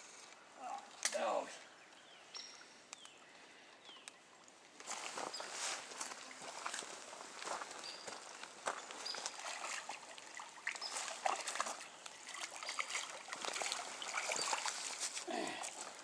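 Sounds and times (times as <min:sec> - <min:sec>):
water splashing and trickling: 0:04.3 - 0:16.0.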